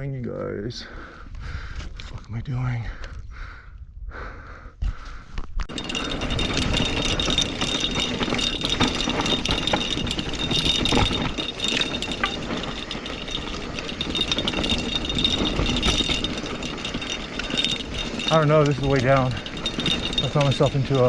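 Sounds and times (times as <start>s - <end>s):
bike frame and chain rattling: 5.6s - 21.0s
rear hub buzzing: 5.7s - 21.0s.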